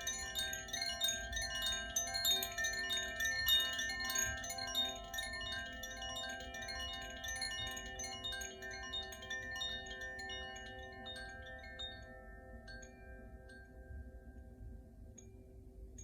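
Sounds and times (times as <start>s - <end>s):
wind chime ringing: 0.0s - 14.3s.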